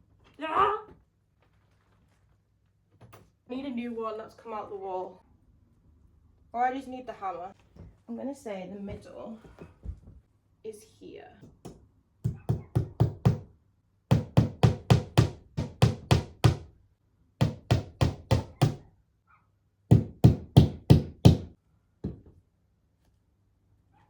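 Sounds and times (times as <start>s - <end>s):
hammer driving nail into wall: 11.4s - 13.5s, 14.1s - 16.7s, 17.4s - 18.8s, 19.9s - 21.5s.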